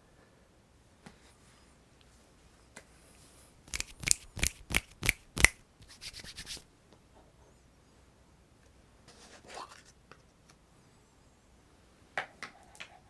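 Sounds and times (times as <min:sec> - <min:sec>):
hands striking sharply: 0:03.7 - 0:06.6.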